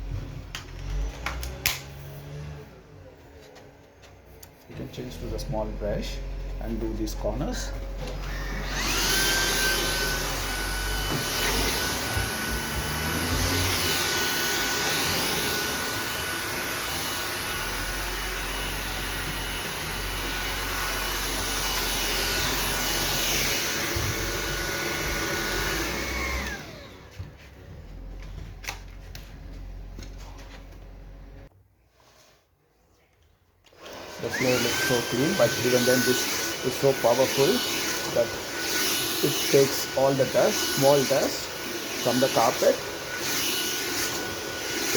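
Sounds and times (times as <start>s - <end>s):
vacuum cleaner motor whine: 0.0s - 3.5s, 4.7s - 31.5s, 33.7s - 44.9s.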